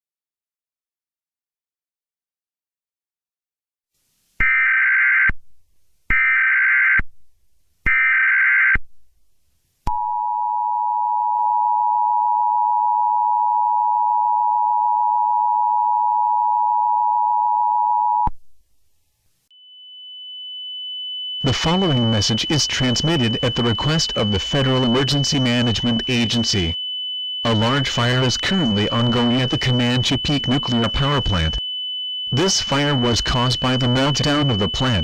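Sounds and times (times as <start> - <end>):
faint steady high tone: 19.5 - 31.6, 32.2 - 35.0
data tone bursts: 21.4 - 26.8, 27.4 - 35.0
two-tone attention signal: 21.4 - 26.8, 27.4 - 31.6, 32.2 - 35.0.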